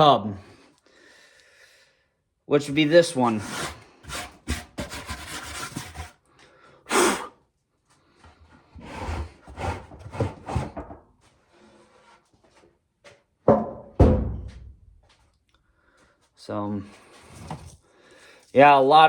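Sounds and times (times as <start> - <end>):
wooden boards scraping: 3.1 - 6.1, 8.8 - 11.0
sharp wooden knocks: 13.5 - 14.6.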